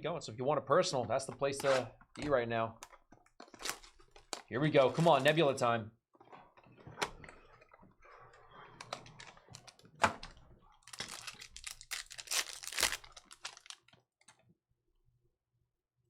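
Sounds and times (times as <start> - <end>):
packaging cracking: 2.8 - 5.4, 8.8 - 14.0
wrapper crinkling and tearing: 3.4 - 5.4, 10.8 - 14.0.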